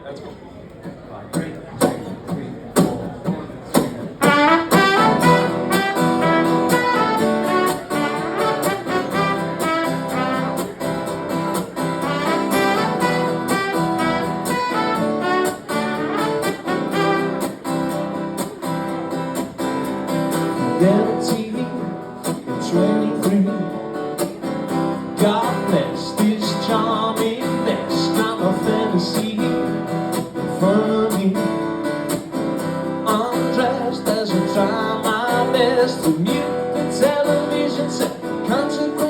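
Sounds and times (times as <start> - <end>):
strummed acoustic guitar: 1.3 - 39.0
brass melody: 4.2 - 17.7.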